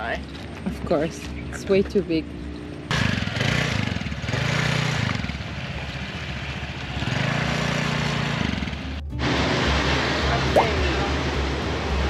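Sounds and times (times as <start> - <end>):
motor scooter engine running: 2.9 - 9.0.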